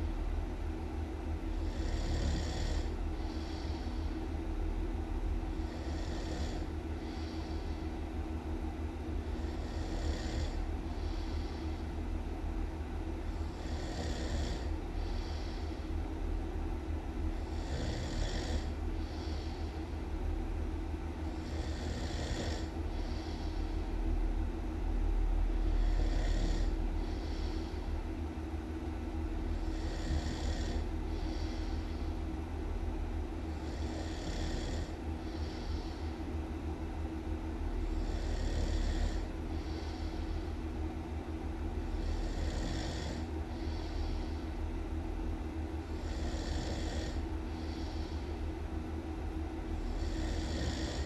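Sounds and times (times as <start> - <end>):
steady low rumble: 0.0 - 1.9, 2.7 - 17.8, 18.5 - 22.0, 22.6 - 46.4, 47.0 - 51.0
person snoring loudly: 1.6 - 3.9, 5.7 - 7.4, 9.4 - 11.6, 13.4 - 15.7, 17.5 - 19.5, 21.4 - 23.4, 25.7 - 27.6, 29.6 - 31.6, 33.6 - 36.0, 37.9 - 40.2, 42.0 - 44.0, 46.0 - 48.1, 49.8 - 51.0.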